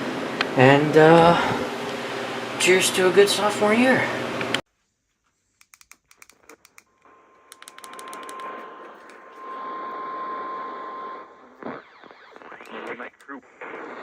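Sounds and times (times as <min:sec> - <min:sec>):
sharp clicks: 0:05.6 - 0:09.2, 0:12.3 - 0:13.4
steady high tone: 0:07.1 - 0:13.1
radio hiss: 0:08.4 - 0:14.0.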